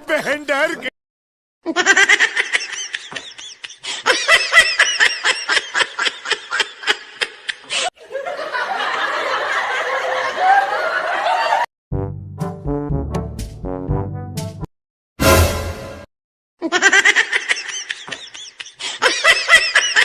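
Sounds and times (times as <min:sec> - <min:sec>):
pulsing laughter: 0:16.6 - 0:20.0.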